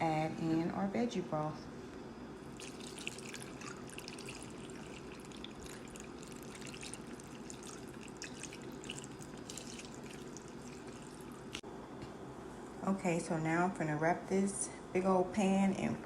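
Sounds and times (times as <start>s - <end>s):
liquid pouring with splashes: 2.5s - 11.6s.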